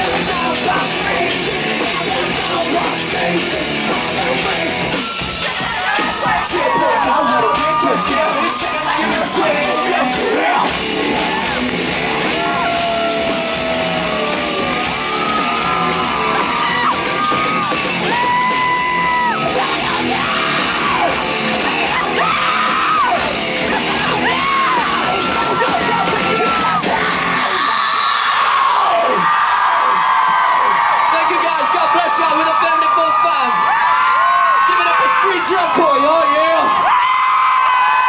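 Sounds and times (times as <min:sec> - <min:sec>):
person singing and yelling: 0:00.0 - 0:28.0
rock band playing loudly: 0:00.0 - 0:28.2.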